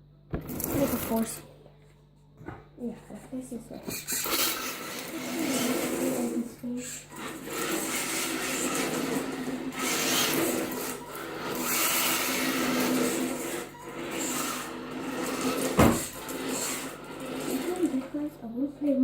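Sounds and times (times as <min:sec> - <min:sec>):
electric toy car motor whirring: 0:03.9 - 0:18.1.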